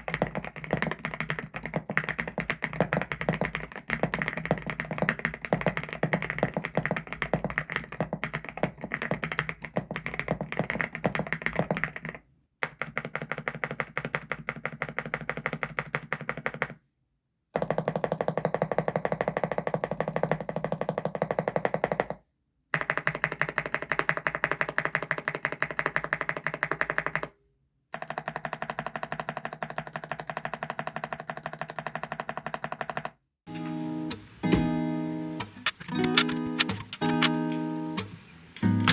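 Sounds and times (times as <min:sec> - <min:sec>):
fast mechanical keyboard typing: 0:00.0 - 0:16.8, 0:28.0 - 0:33.2, 0:35.4 - 0:38.1.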